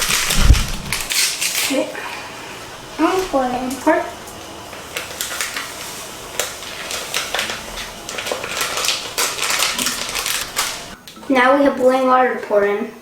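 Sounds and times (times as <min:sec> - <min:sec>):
powder granules pouring: 0:04.9 - 0:11.0.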